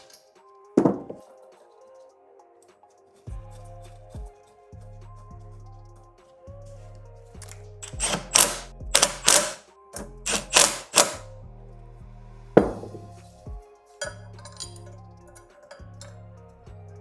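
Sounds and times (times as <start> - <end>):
background music: 0.0 - 17.0
hand ratchet rasping pulls: 7.4 - 11.2
sharp metallic click: 7.4 - 11.2.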